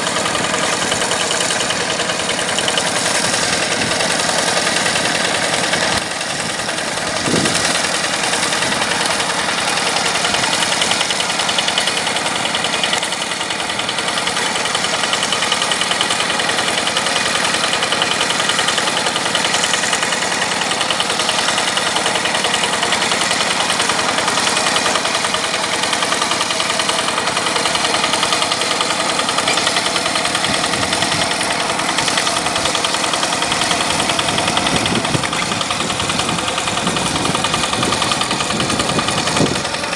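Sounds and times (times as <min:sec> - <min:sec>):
tractor diesel engine knocking: 0:00.0 - 0:39.9.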